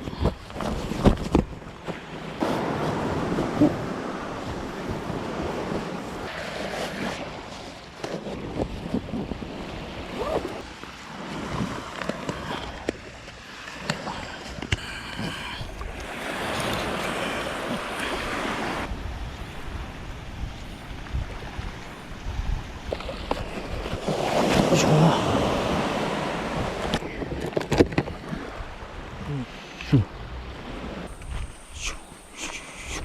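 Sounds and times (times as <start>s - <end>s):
sea water lapping: 0.0s - 33.0s
wind buffeting microphone: 2.4s - 6.3s, 8.4s - 10.6s, 15.2s - 29.3s.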